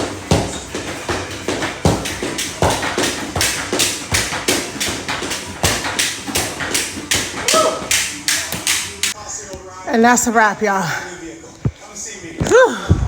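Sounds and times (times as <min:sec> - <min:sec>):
exercise ropes slapping ground: 0:00.0 - 0:09.2.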